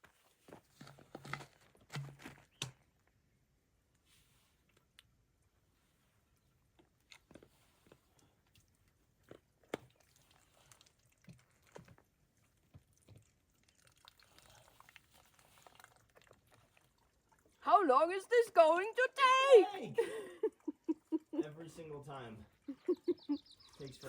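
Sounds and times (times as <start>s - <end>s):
plastic bottle crinkling: 0.5s - 2.8s.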